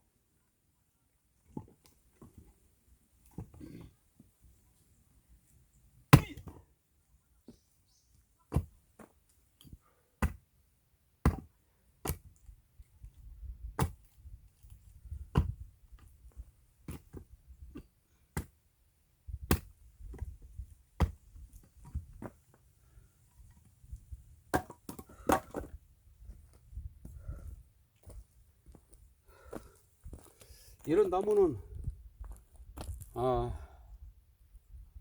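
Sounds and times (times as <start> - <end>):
axe chopping wood: 6.1 - 6.6, 8.5 - 10.5, 11.2 - 12.4, 13.7 - 14.2, 15.3 - 15.6, 16.8 - 18.6, 19.3 - 20.3, 21.0 - 22.3, 24.5 - 25.8.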